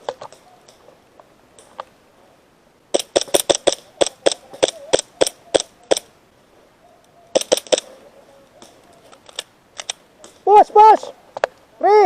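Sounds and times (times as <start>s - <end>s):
airsoft pistols firing: 2.9s - 6.1s, 7.3s - 7.9s
faint clicks: 7.0s - 10.4s.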